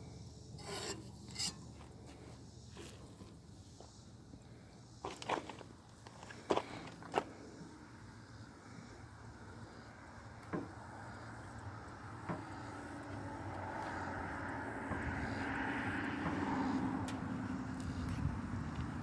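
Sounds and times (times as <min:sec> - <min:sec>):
motor vehicle engine hum: 0:09.2 - 0:19.0.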